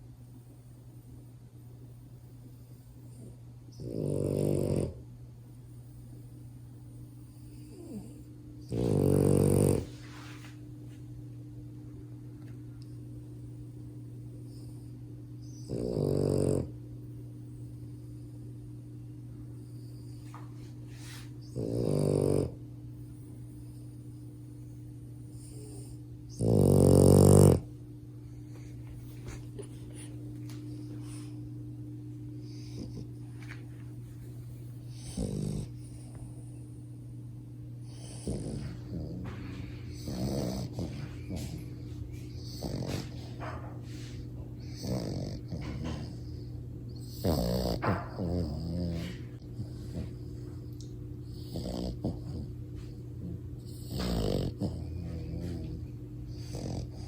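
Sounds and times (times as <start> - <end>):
steady low hum: 0.0 - 57.0
puppy snoring: 3.0 - 5.1, 7.1 - 10.2, 14.4 - 16.8, 21.4 - 27.8, 32.4 - 33.6, 34.8 - 36.7, 37.8 - 57.0.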